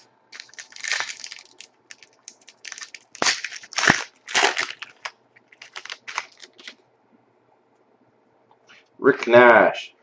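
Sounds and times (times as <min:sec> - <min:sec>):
cards rustling and scraping: 0:00.4 - 0:06.8.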